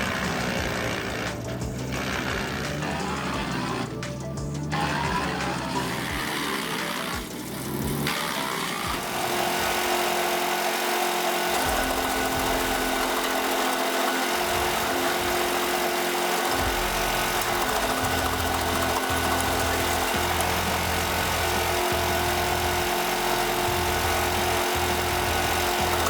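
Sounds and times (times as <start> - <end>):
wood chipper engine drone: 0.0 - 26.0.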